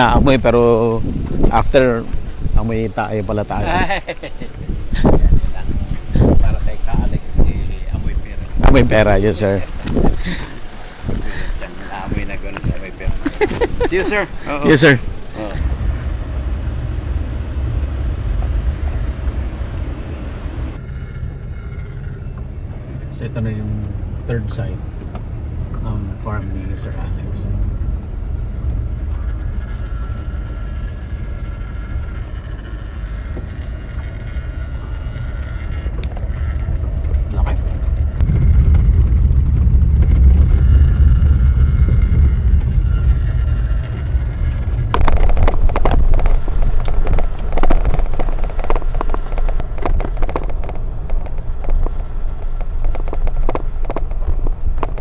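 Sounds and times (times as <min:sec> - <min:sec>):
faint steady whine: 0:15.6 - 0:20.8
vehicle driving rumble: 0:15.6 - 0:20.8, 0:35.3 - 0:46.0.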